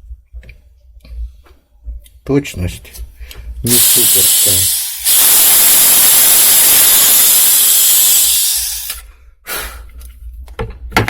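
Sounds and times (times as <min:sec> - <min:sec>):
drill grinding through metal: 0:03.7 - 0:09.1.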